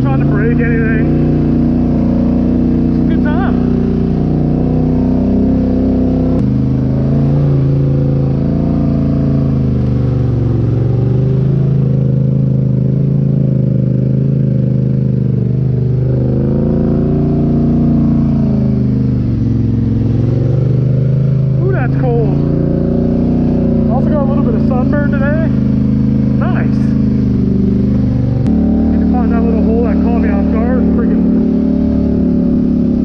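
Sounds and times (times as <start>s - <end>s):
atv engine running at low speed: 0.0s - 33.0s.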